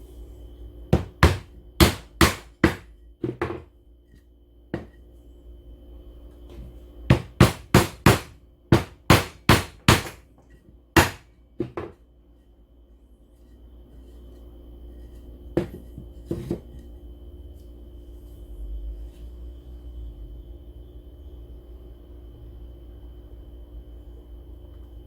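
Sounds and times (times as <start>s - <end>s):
knocks on wood: 0.9s - 3.7s, 7.1s - 10.2s, 11.0s - 12.0s, 15.6s - 16.6s.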